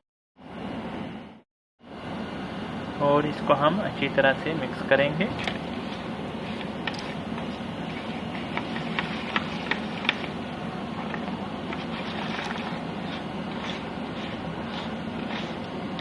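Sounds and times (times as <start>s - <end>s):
steady low hum: 0.5s - 16.0s
hands squishing wet marinade: 5.3s - 16.0s.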